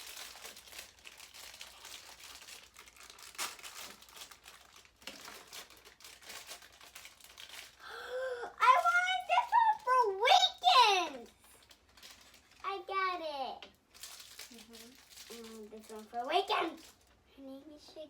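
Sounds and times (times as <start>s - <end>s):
plastic wrappers crinkling and tearing: 0.0s - 17.2s
child's voice: 8.3s - 11.5s, 12.6s - 13.6s, 14.5s - 18.0s.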